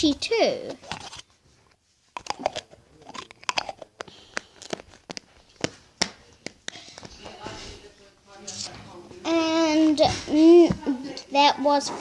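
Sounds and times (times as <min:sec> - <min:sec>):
crunchy slime crackling: 0:02.2 - 0:05.7.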